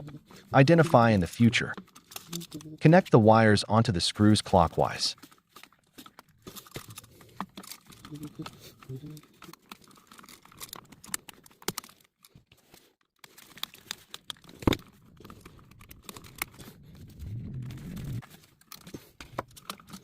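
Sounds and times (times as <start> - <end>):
hands handling electrical wires: 0.0 - 3.2, 4.6 - 20.0
low hum: 15.6 - 18.2.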